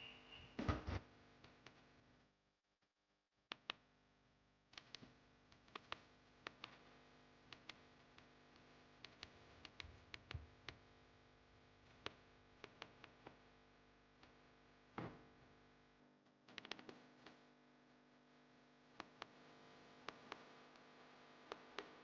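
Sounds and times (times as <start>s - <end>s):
faint clicks and taps: 3.5s - 3.8s, 4.7s - 6.9s, 7.5s - 10.9s, 11.9s - 13.5s, 19.0s - 19.4s, 20.0s - 20.9s
faint steady hum: 3.6s - 22.0s.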